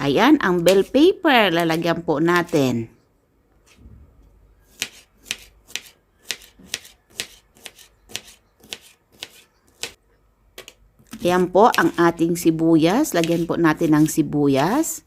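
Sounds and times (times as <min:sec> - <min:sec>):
knife slicing on cutting board: 0:04.7 - 0:10.0.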